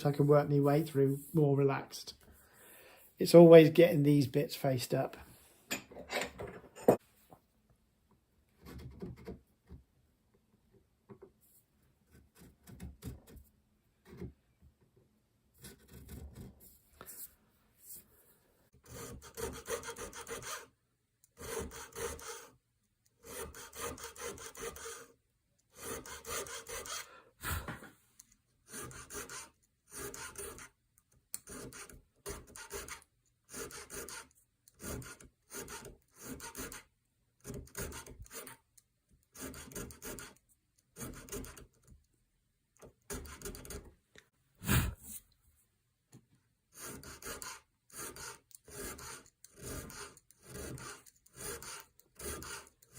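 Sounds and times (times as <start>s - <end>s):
checkering tool rasping on wood: 15.6s - 16.5s, 18.8s - 22.6s, 23.2s - 27.1s, 28.6s - 41.8s, 43.0s - 43.9s, 46.7s - 52.9s.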